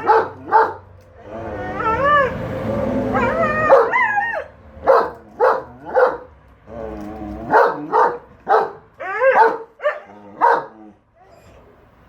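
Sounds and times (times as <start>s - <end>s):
dog barking: 0.0s - 0.9s, 3.2s - 6.3s, 7.4s - 10.8s
dog yowling: 0.0s - 11.6s.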